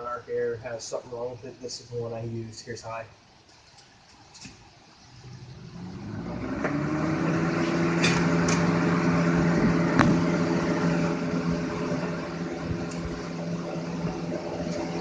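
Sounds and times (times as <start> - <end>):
box fan motor hum: 4.4 - 15.0.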